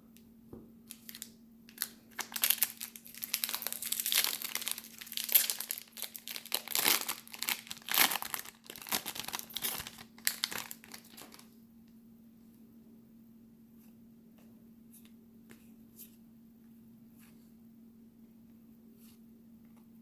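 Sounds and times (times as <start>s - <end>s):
foil wrapper crinkling and tearing: 0.9s - 11.5s.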